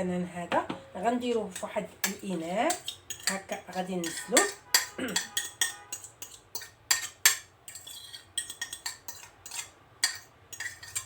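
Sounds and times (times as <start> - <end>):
metal utensil clinking against bowl: 1.5 - 11.0.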